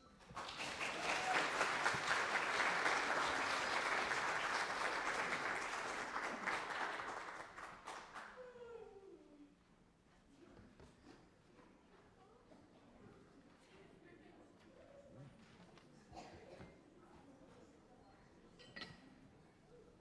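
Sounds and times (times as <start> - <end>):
audience applauding: 0.2 - 8.4.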